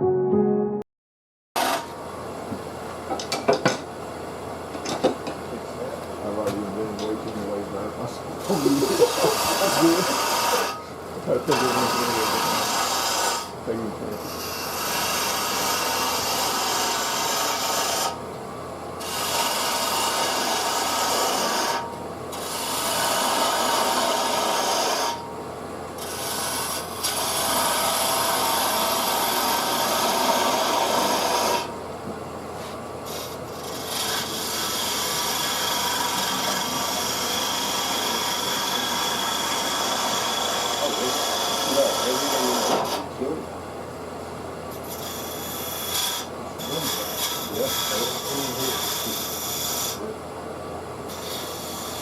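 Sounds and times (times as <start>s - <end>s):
lathe running: 8.2s - 18.2s, 19.0s - 25.2s, 26.0s - 31.9s, 32.6s - 43.1s, 44.7s - 50.0s, 51.0s - 52.0s
turning tool scraping wood: 8.4s - 10.8s, 11.4s - 13.5s, 14.2s - 18.2s, 19.0s - 25.2s, 26.0s - 31.7s, 32.6s - 43.1s, 44.8s - 50.0s, 51.1s - 52.0s.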